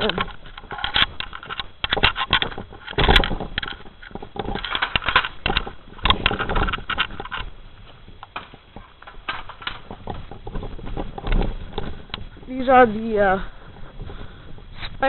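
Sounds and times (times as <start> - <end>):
footsteps on dry ground: 5.3 - 15.0.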